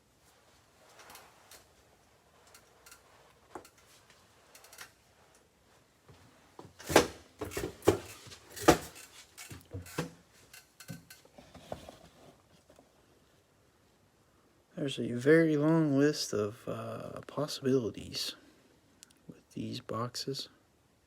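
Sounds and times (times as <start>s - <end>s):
light clicks of objects handled: 0.2s - 5.5s.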